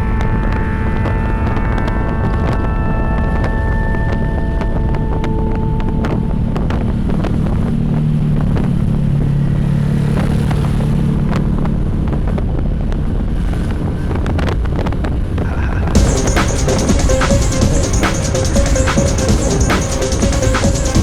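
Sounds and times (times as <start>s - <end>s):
vehicle engine humming: 15.8s - 21.0s.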